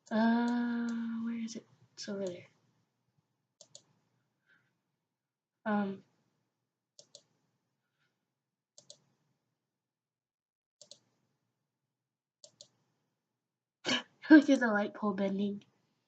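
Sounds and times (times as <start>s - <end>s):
computer mouse double-clicks: 3.6s - 3.9s, 7.0s - 7.3s, 8.8s - 9.1s, 10.8s - 11.1s, 12.4s - 12.8s.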